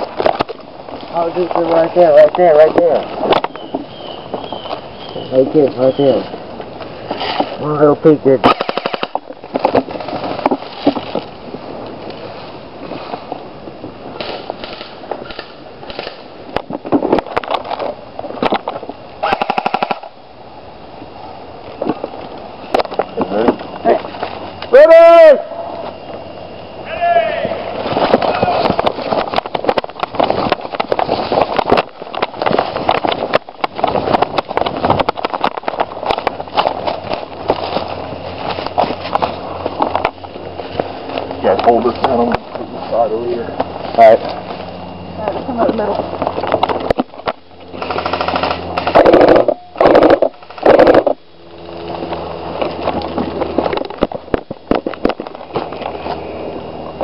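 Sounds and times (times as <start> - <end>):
gear clattering and rustling: 0.0 - 13.5, 14.1 - 19.0, 27.7 - 57.0
airsoft guns firing: 8.4 - 9.2, 19.2 - 20.2, 47.8 - 50.8
running footfalls: 27.4 - 43.0.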